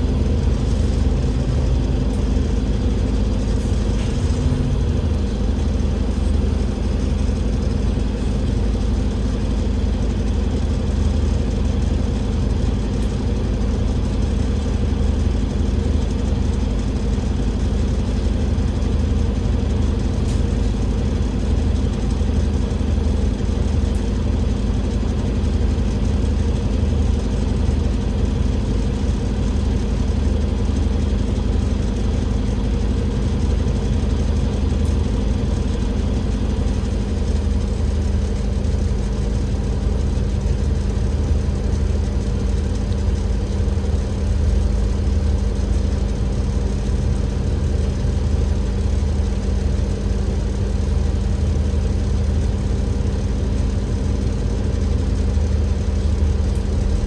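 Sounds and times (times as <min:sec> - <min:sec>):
diesel bus engine running: 0:00.0 - 0:57.0.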